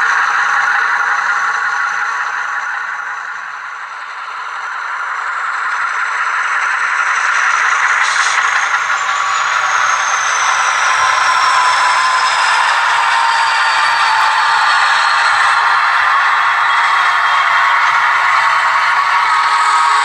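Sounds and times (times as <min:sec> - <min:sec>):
model locomotive rattling: 0:06.6 - 0:20.0
thin whine falling in pitch: 0:07.6 - 0:20.0.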